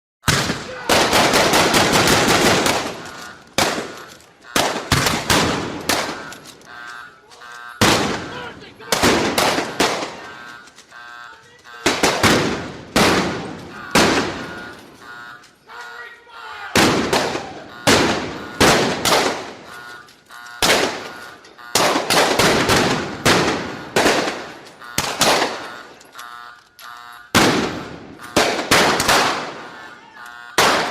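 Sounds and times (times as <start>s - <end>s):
single gunshots with echo: 0.2s - 6.3s, 7.8s - 10.3s, 11.8s - 14.7s, 16.8s - 19.7s, 21.8s - 25.7s, 27.4s - 29.8s, 30.6s - 30.9s
automatic gunfire: 0.2s - 6.8s, 7.8s - 10.9s, 11.8s - 15.0s, 16.7s - 26.1s, 27.3s - 30.0s, 30.6s - 30.9s.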